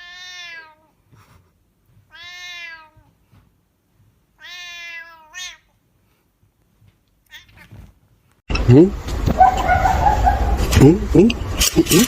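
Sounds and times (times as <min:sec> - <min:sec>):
cat meowing: 0:00.0 - 0:01.0, 0:02.1 - 0:03.1, 0:04.4 - 0:05.7, 0:07.3 - 0:07.8.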